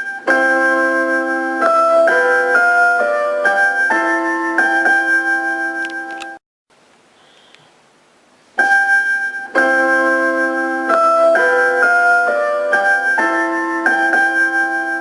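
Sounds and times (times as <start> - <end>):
electronic keyboard chords: 0.0 - 6.4, 8.6 - 15.0
faint radio hiss: 6.7 - 9.5.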